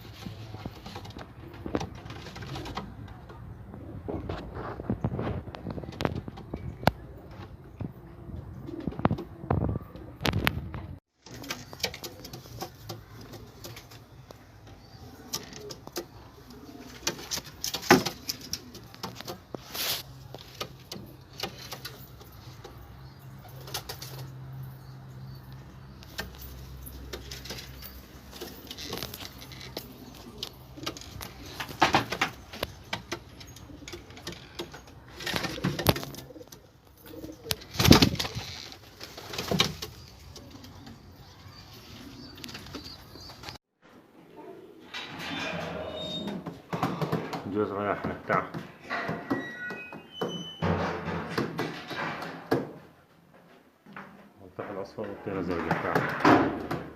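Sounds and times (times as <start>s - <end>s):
pigeons cooing: 8.0s - 20.0s, 20.6s - 43.6s
wings flapping: 37.4s - 40.9s.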